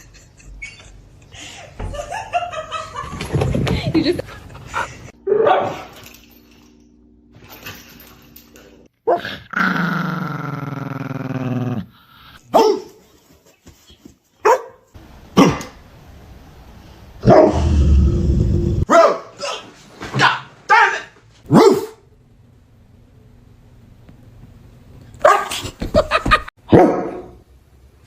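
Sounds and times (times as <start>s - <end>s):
dog barking: 5.3s - 5.9s, 12.5s - 12.9s, 14.4s - 14.8s, 17.2s - 17.6s, 18.9s - 19.6s, 21.5s - 22.0s, 25.2s - 25.6s, 26.7s - 27.4s.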